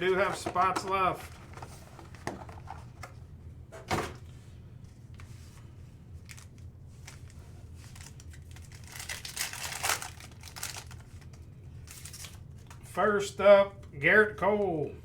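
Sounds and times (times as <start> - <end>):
wrapper tearing and crinkling: 6.2 - 12.7.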